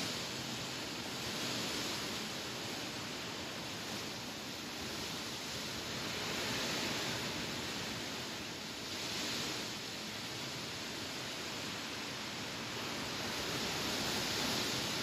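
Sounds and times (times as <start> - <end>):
wind blowing through grass: 0.0 - 15.0.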